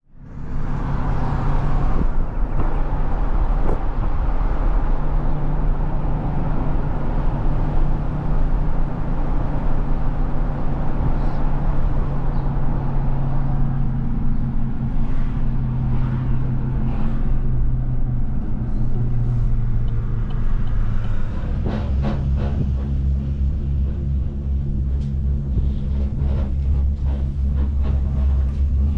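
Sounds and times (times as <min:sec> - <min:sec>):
road noise: 0:00.0 - 0:28.9
vehicle engine drone: 0:00.0 - 0:28.9.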